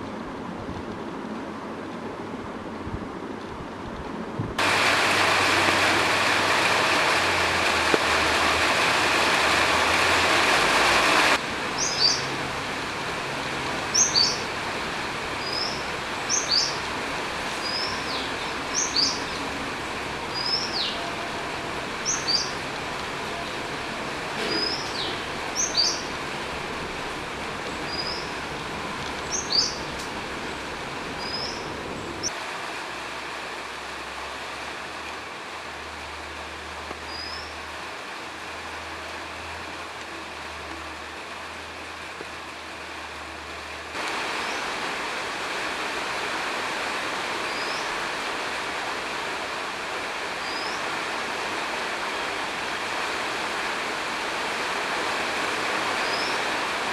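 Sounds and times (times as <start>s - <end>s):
rain hissing: 4.6s - 56.9s
bird whistled calls: 11.8s - 12.3s, 13.9s - 14.4s, 15.4s - 16.8s, 24.4s - 26.1s, 29.3s - 29.9s.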